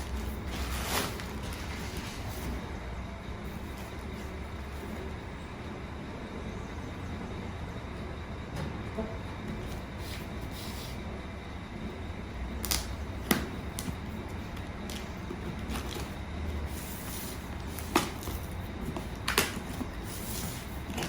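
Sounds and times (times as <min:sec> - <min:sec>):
packaging rustling: 0:00.0 - 0:02.5.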